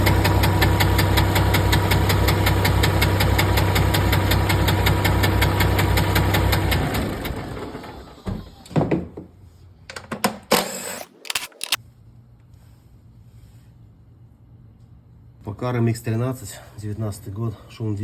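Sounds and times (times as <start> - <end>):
diesel engine idling with knock: 0.0 - 8.6
engine running down: 0.0 - 8.6.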